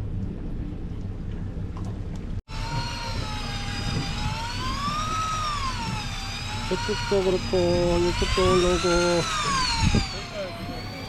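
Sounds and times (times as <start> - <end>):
boat engine rumble: 0.0 - 11.0
electric fishing reel whining: 2.5 - 11.0.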